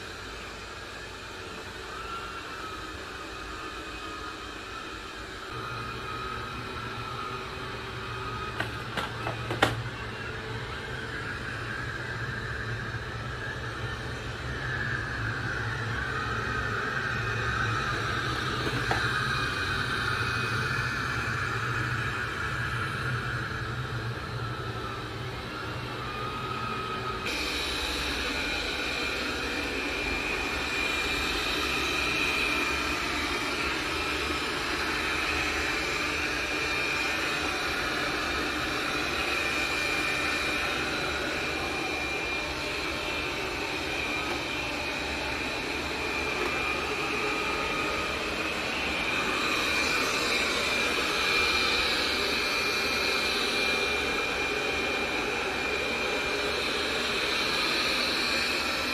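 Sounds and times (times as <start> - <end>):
robot vacuum motor whir: 5.6 - 11.2, 15.8 - 20.6, 36.6 - 53.1.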